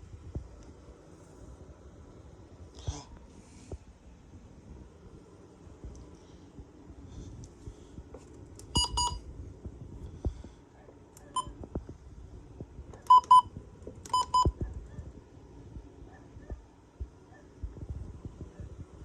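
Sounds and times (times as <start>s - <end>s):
short electronic beeps: 8.8s - 9.2s, 14.1s - 14.5s.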